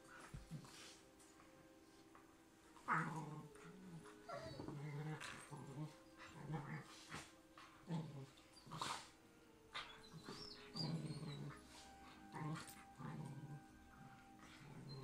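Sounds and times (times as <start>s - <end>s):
dogs growling: 2.7s - 15.0s
dog whining: 2.8s - 7.3s, 7.9s - 15.0s.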